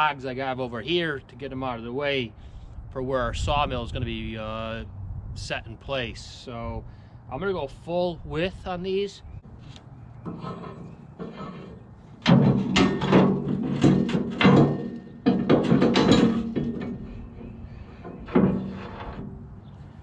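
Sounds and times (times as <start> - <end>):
metal scraping and clanking: 10.2 - 20.0
metal knock: 12.2 - 18.8.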